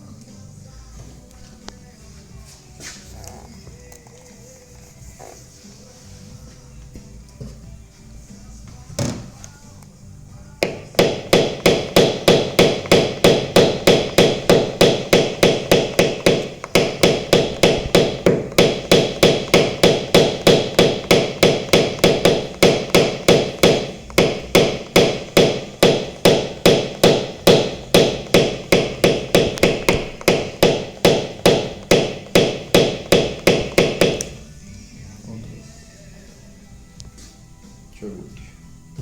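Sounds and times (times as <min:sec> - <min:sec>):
small hammer tapping car panel: 0:10.6 - 0:34.4.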